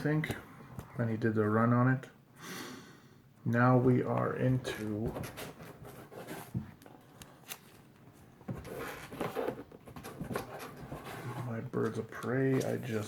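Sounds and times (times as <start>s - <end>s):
comic books rustling: 4.5s - 13.0s.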